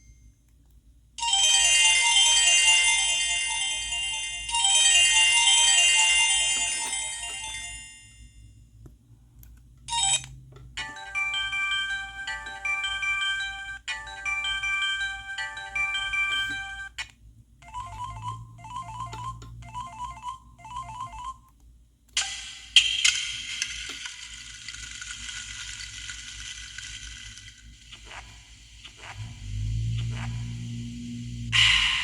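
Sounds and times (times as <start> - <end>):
mobile phone ringtones: 1.2 - 8.2, 9.9 - 17.0, 17.6 - 21.4.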